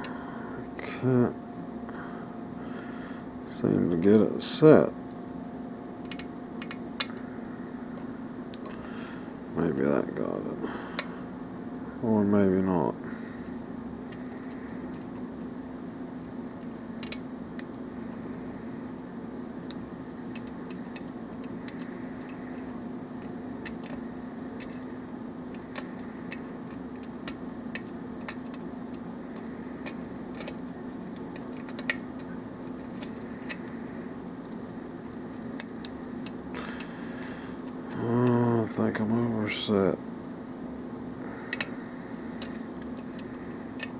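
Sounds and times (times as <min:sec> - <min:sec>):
steady low hum: 0:00.0 - 0:43.9
lock pick clicking in lock: 0:16.6 - 0:17.8, 0:24.6 - 0:24.9, 0:25.6 - 0:33.7, 0:42.4 - 0:43.9.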